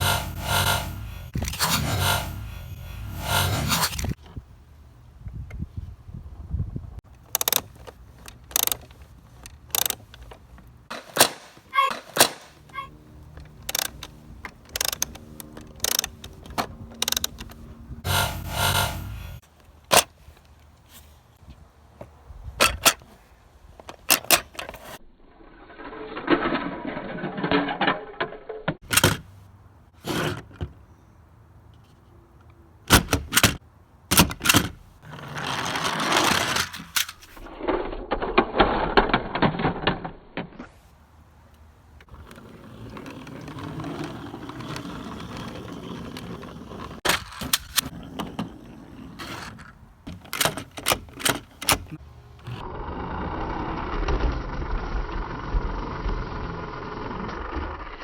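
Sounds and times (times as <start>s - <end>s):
toys clicking and knocking: 7.1s - 20.6s, 49.2s - 52.6s.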